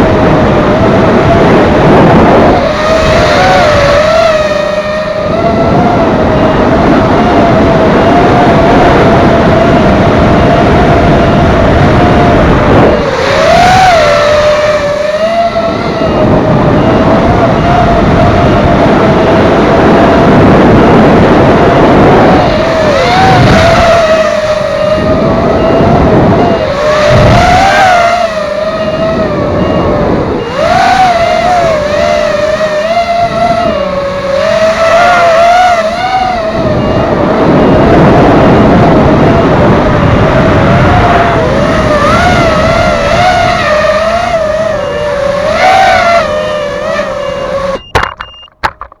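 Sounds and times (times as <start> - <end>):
quadcopter motors whining: 0.0 - 48.4
wind noise: 0.0 - 49.0
short high beep: 47.8 - 48.6.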